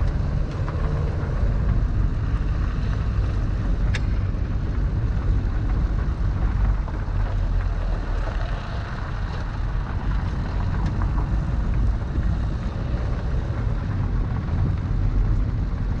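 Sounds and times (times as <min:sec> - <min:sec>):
engine running with low rumble: 0:00.0 - 0:16.0.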